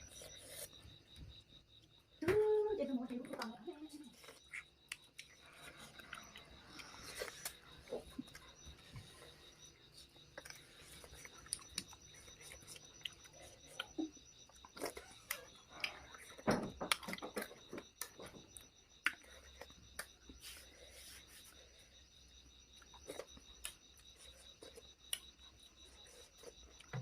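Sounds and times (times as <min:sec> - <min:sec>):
person chewing: 0:00.0 - 0:00.8, 0:04.2 - 0:09.3, 0:09.9 - 0:20.7, 0:22.8 - 0:26.9.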